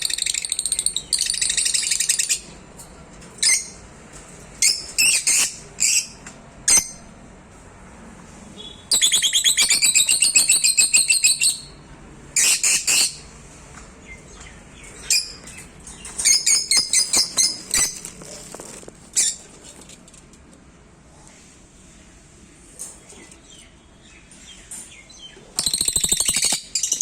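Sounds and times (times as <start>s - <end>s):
small parrots chirping shrilly: 0.0s - 2.5s, 4.6s - 7.0s, 8.9s - 11.8s, 12.4s - 13.2s, 16.2s - 18.2s, 25.6s - 27.0s.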